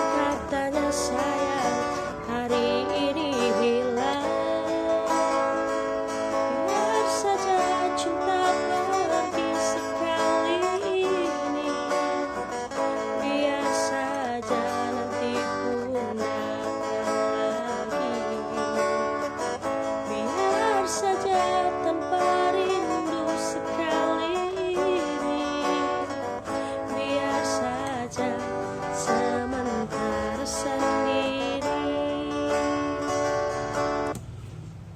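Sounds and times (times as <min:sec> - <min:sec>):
woman singing: 0:00.0 - 0:33.9
strummed acoustic guitar: 0:00.0 - 0:34.2.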